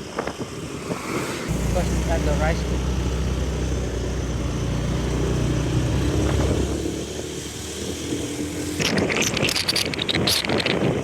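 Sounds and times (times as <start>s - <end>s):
road noise: 0.0s - 11.0s
motorcycle engine running: 1.5s - 9.5s.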